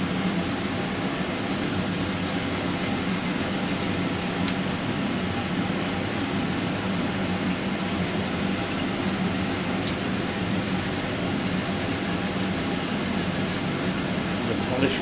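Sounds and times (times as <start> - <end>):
steady hum: 0.0 - 15.0
wire brush scrubbing metal: 8.3 - 15.0.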